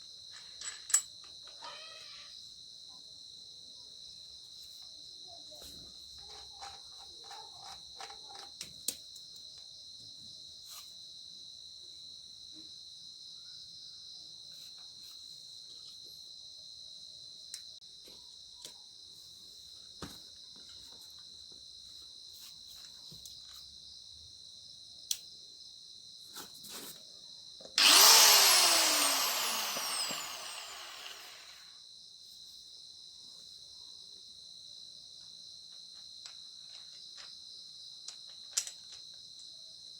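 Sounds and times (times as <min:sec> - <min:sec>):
small clicks and knocks: 0:06.2 - 0:09.3, 0:35.9 - 0:37.3, 0:38.1 - 0:39.1
angle grinder whine: 0:27.8 - 0:31.6.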